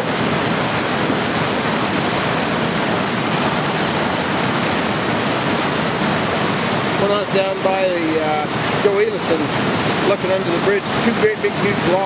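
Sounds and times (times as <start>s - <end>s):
flooded creek rushing: 0.0s - 12.0s.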